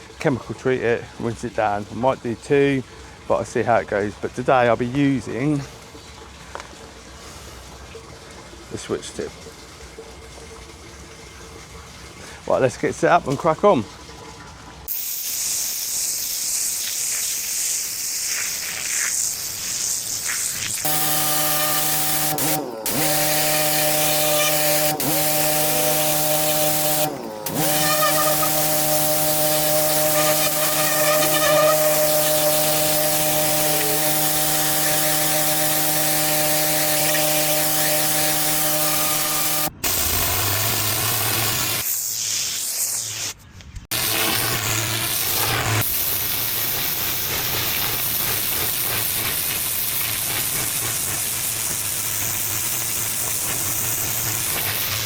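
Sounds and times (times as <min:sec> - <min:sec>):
pressure washer motor: 0:14.8 - 0:43.3, 0:43.9 - 0:55.0
high-pressure water jet hiss: 0:14.9 - 0:55.0.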